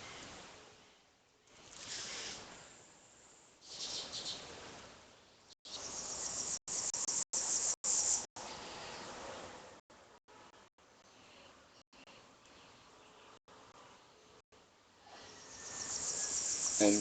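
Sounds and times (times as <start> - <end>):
shrill insect chirring: 15.4 - 17.0.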